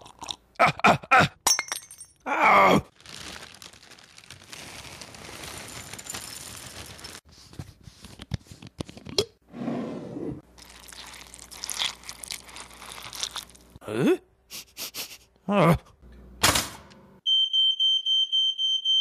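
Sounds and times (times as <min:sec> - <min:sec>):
man groaning: 0:00.6 - 0:01.4, 0:02.3 - 0:02.9, 0:13.8 - 0:14.3, 0:15.4 - 0:16.0.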